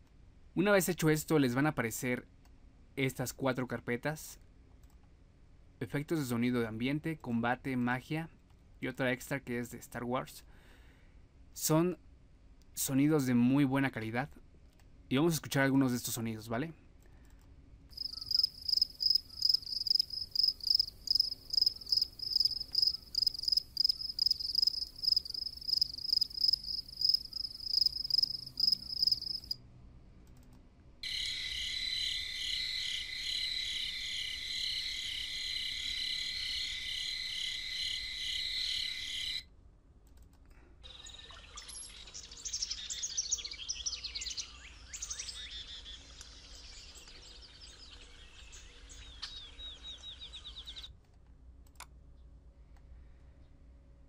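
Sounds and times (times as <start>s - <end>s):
rhythmic cricket chirping: 17.9s - 29.6s
steady insect trill: 17.9s - 29.6s, 31.0s - 39.4s
birdsong chirps and whistles: 18.0s - 24.7s, 40.9s - 50.9s.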